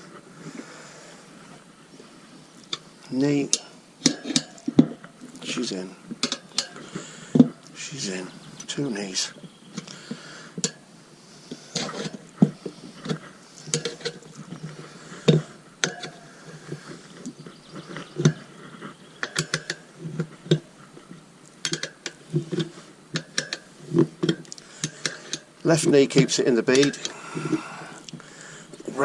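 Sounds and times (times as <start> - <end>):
tools clicking on wheel rim: 19.2 - 20.7, 21.6 - 25.5, 26.8 - 28.2.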